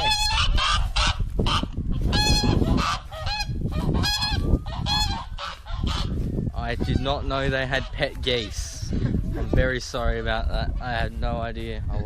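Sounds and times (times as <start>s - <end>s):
geese honking: 0.0s - 8.8s.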